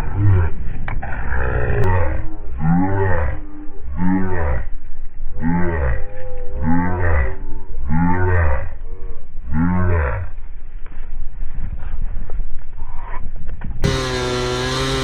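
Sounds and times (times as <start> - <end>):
large animal low calls: 0.0 - 10.4
steady low rumble: 0.0 - 13.8.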